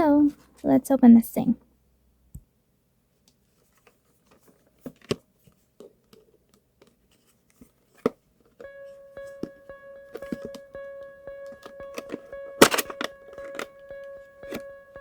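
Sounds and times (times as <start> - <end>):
background music with held note: 8.6 - 15.0
packaging clicks and crinkles: 11.5 - 14.7.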